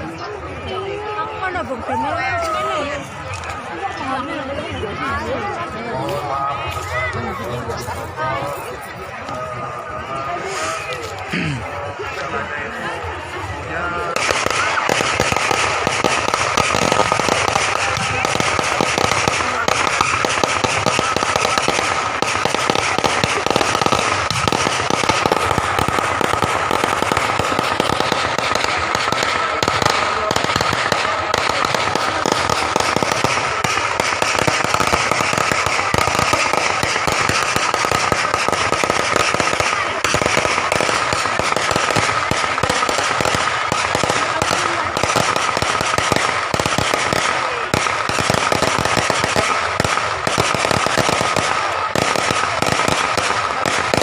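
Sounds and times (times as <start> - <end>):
firecrackers crackling bangs: 12.8 - 54.0.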